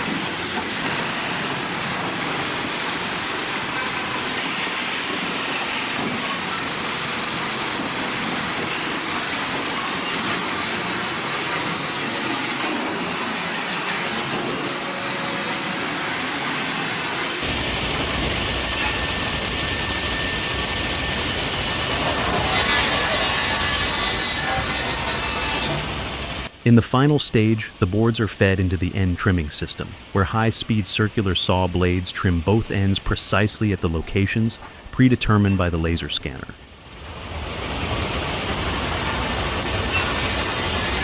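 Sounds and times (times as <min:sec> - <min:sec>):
sawmill machinery clattering: 0:00.0 - 0:26.5.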